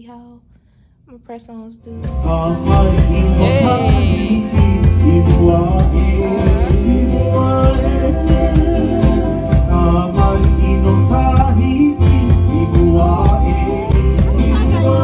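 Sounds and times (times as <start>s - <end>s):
music with singing and bass beat: 2.0s - 15.0s.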